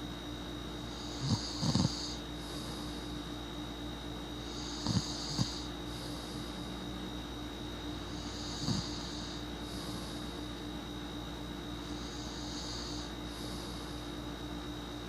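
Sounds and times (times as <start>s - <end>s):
steady background hum: 0.0s - 15.0s
person snoring: 0.9s - 3.1s, 4.4s - 6.9s, 8.0s - 10.4s, 11.8s - 14.0s.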